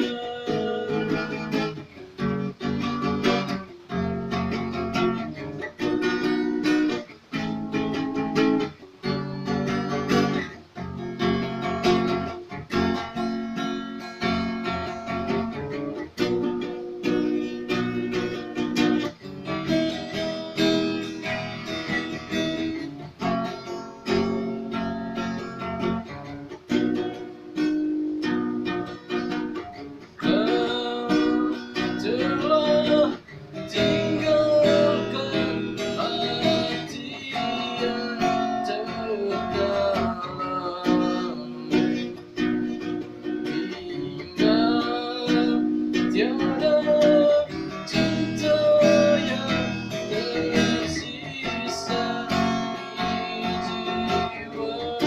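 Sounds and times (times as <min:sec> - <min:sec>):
acoustic guitar strumming: 0:00.0 - 0:55.0
sliding melody line: 0:30.2 - 0:55.0.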